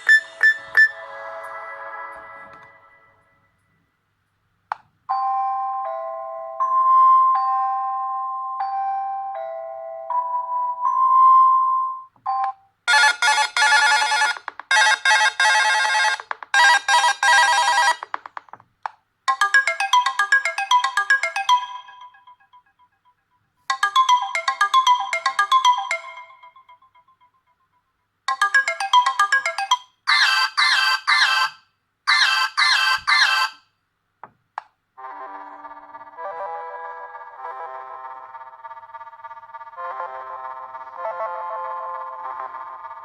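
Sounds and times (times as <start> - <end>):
phone ringtones: 0.0 - 1.0, 5.1 - 18.2, 19.3 - 23.0, 23.7 - 27.4, 28.3 - 31.4.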